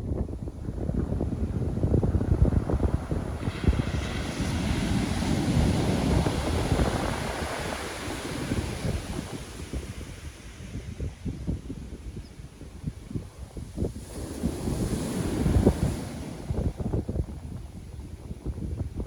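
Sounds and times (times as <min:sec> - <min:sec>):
wind buffeting microphone: 0:00.0 - 0:19.0
ocean wave breaking: 0:02.2 - 0:10.1.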